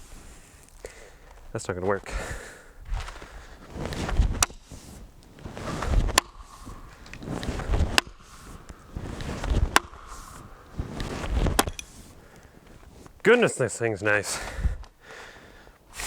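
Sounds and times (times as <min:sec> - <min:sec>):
axe chopping wooden log: 0:06.1 - 0:06.4, 0:07.9 - 0:08.2.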